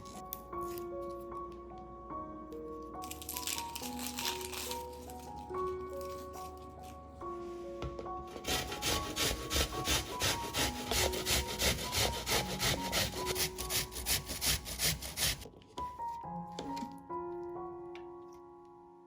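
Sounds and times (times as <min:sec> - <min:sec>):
keyboard background music: 0:00.0 - 0:19.0
rhythmic scraping strokes: 0:08.3 - 0:15.4.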